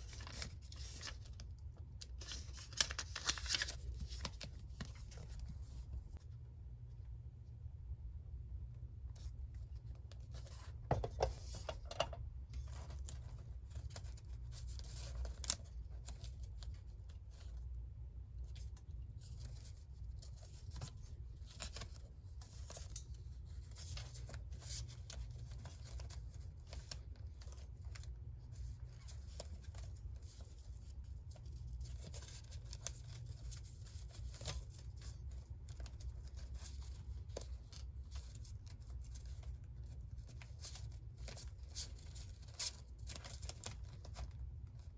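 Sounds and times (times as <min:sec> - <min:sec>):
paper tearing and rustling: 0:00.0 - 0:01.3, 0:02.2 - 0:05.4
low steady hum: 0:00.0 - 0:44.9.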